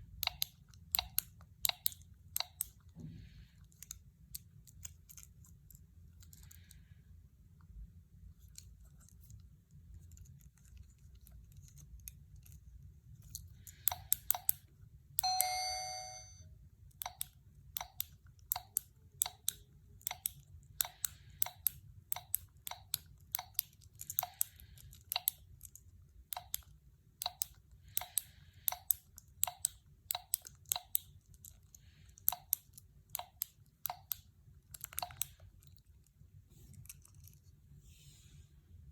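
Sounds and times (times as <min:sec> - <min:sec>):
brief ringing tone: 0:15.2 - 0:16.4.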